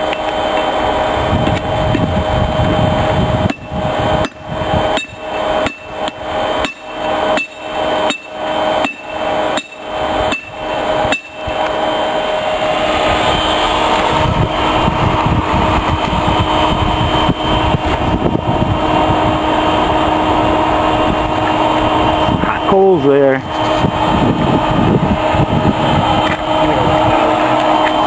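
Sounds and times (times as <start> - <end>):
motor hum: 0.0 - 28.0
hammer striking metal on anvil: 3.5 - 11.5.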